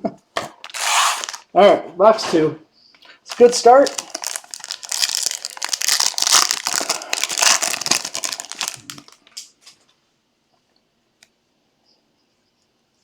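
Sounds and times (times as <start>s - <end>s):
plastic wrapping crinkling and tearing: 0.6s - 1.5s, 3.3s - 9.8s.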